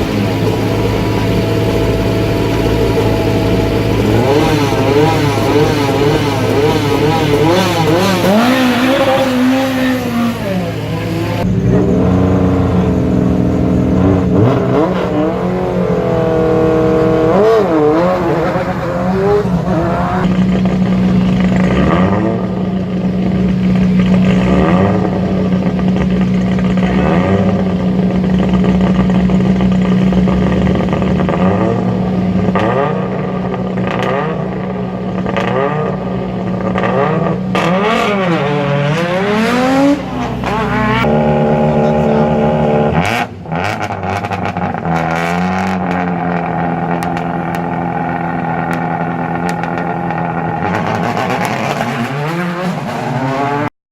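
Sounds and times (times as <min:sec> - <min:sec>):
rally car engine revving: 0:00.0 - 0:53.7.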